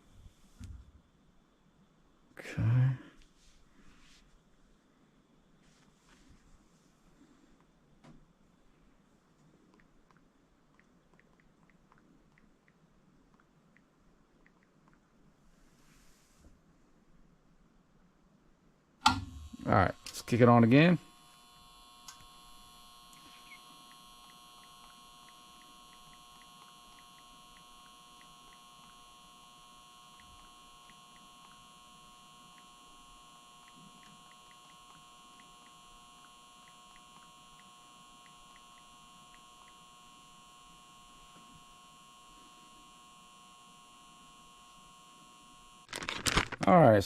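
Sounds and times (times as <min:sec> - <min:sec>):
faint electrical hum: 0:00.0 - 0:47.0
faint irregular ticking: 0:19.0 - 0:45.9.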